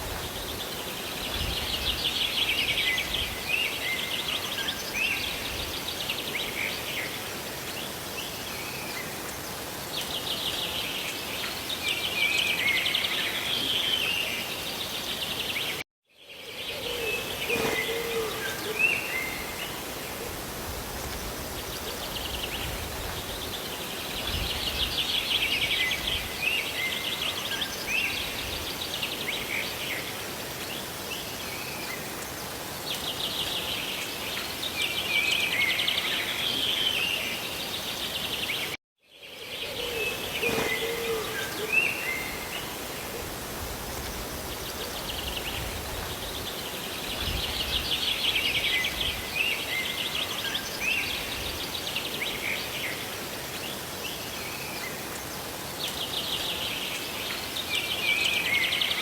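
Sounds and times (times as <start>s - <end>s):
birds chirping and trilling: 16.6s - 19.9s, 30.8s - 43.0s.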